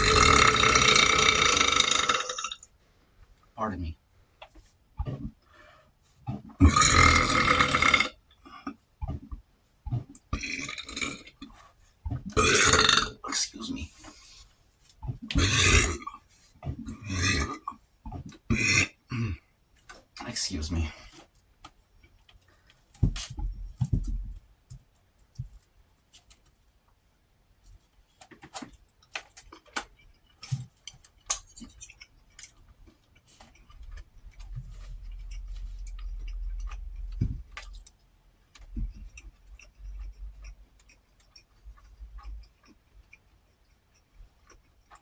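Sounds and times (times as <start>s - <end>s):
chewing clicks and smacks: 28.5s - 45.0s.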